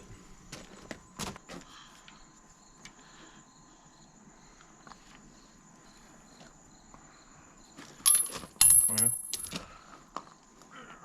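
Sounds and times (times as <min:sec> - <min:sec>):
insect chirping: 0:01.6 - 0:10.0.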